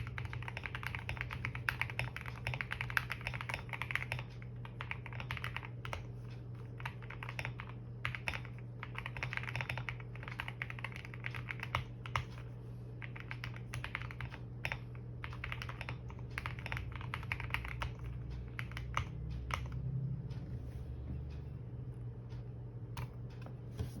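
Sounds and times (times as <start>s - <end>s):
mechanical keyboard typing: 0.0s - 6.1s, 6.7s - 12.4s, 13.0s - 19.9s
steady low hum: 0.0s - 24.0s.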